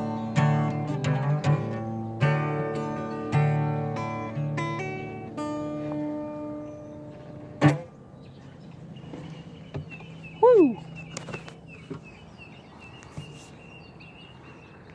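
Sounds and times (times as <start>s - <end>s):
loud bird call: 8.2s - 14.9s.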